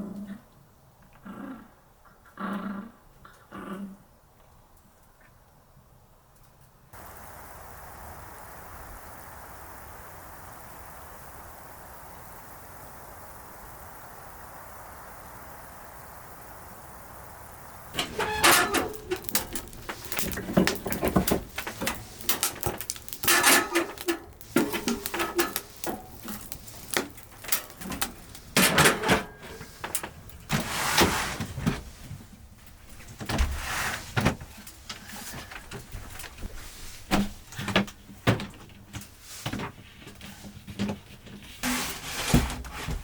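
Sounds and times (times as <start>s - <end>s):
knocks clicks and rustles: 17.9s - 36.5s
door or drawer sliding: 18.0s - 22.3s, 28.6s - 32.0s, 33.3s - 34.4s, 41.6s - 43.0s.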